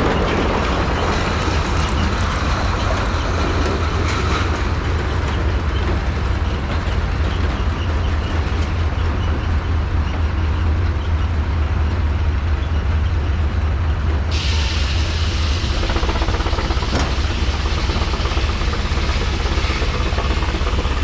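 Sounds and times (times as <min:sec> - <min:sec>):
tractor engine rumbling: 0:00.0 - 0:08.6, 0:14.3 - 0:21.0.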